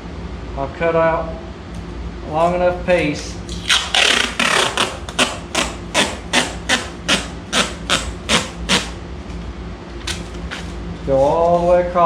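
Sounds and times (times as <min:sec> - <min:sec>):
tape pulled off a roll: 0:03.5 - 0:09.0, 0:10.0 - 0:10.8.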